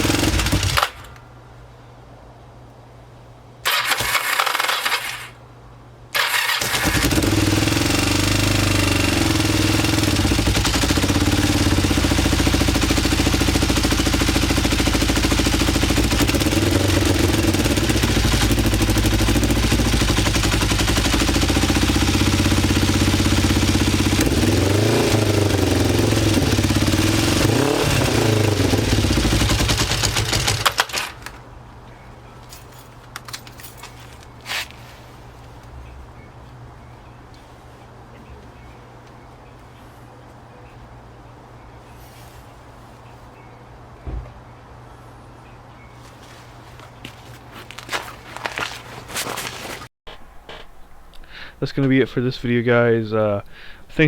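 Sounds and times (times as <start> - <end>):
motorcycle engine starting and idling: 0.0 - 1.2, 3.6 - 5.4, 6.1 - 31.5.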